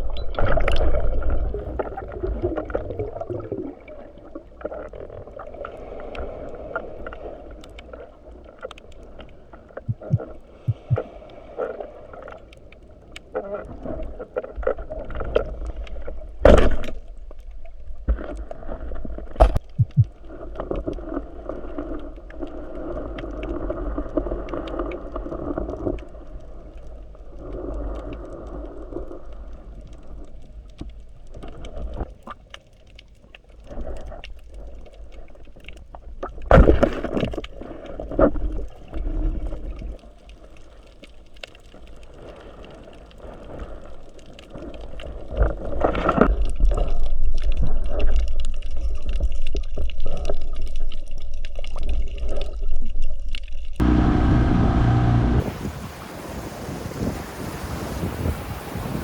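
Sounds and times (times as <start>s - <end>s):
water sloshing and gurgling: 0.0s - 59.0s
steady low rumble: 53.8s - 56.5s.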